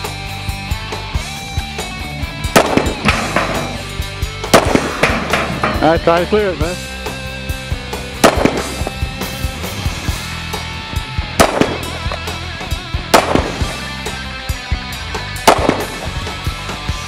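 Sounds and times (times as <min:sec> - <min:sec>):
background music: 0:00.0 - 0:17.0
rifle shots: 0:02.5 - 0:05.8, 0:08.2 - 0:09.0, 0:11.4 - 0:12.3, 0:13.1 - 0:13.9, 0:15.4 - 0:16.3.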